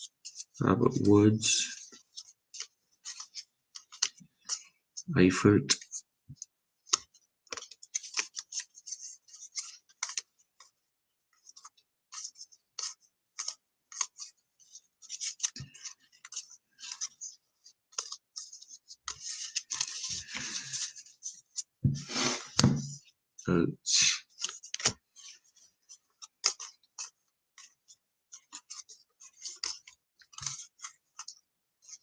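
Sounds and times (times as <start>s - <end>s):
trading cards flicked by hand: 24.4s - 25.0s.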